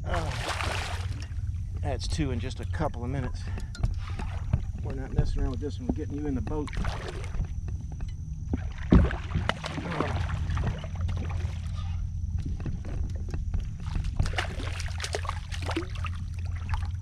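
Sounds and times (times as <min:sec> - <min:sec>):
water splashing: 0:00.0 - 0:01.4, 0:02.7 - 0:05.1, 0:06.6 - 0:07.5, 0:08.6 - 0:11.9, 0:13.8 - 0:17.0
steady low rumble: 0:00.0 - 0:17.0.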